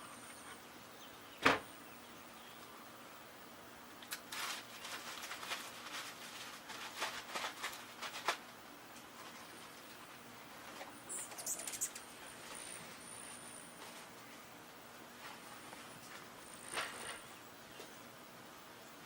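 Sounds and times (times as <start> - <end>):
scratchy rustling: 4.3 - 8.4
bird chirps: 11.0 - 12.1.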